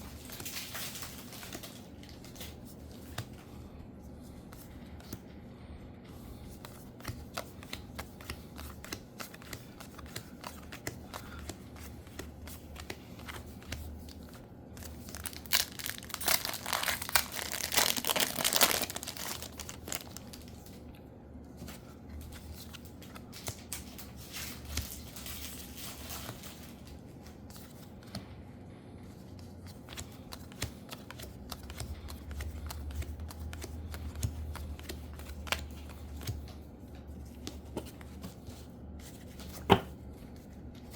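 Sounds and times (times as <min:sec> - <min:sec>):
foil wrappers crinkling and tearing: 0:00.0 - 0:02.5, 0:14.8 - 0:20.7
rustling of cards being handled: 0:00.0 - 0:28.4, 0:29.0 - 0:40.9.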